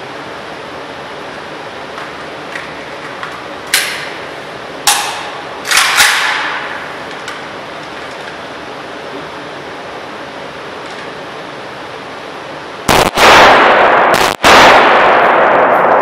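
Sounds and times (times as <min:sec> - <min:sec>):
suppressed rifle shots: 0:12.9 - 0:16.0.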